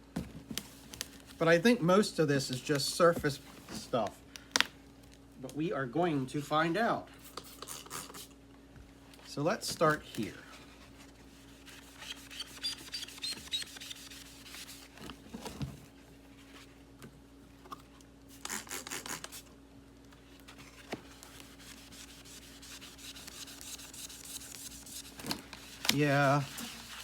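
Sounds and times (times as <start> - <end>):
faint steady hum: 0.0 - 27.0
pad scrubbing plastic: 11.3 - 15.1, 20.6 - 27.0.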